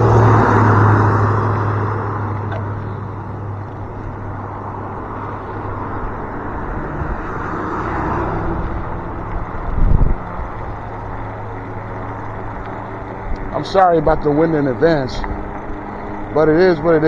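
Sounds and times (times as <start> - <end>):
wind rushing over microphone: 0.0 - 11.4
passing vehicle: 0.0 - 17.0
steady low hum: 0.0 - 17.0.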